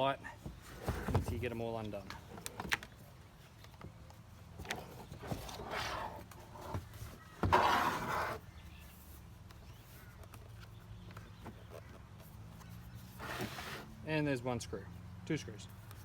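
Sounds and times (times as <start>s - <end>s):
scraping rustle: 0.4s - 3.1s, 4.6s - 10.7s, 11.4s - 14.0s.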